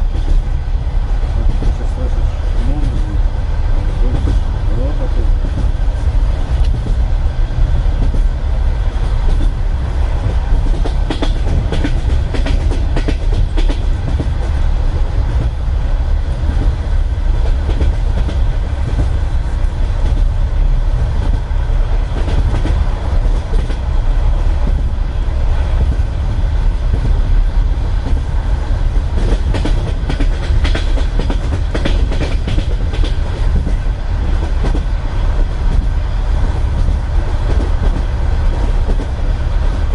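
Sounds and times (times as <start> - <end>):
train wheels rumbling on rails: 0.0 - 39.9
wheels clacking over rail joints: 9.0 - 15.6, 27.9 - 34.9.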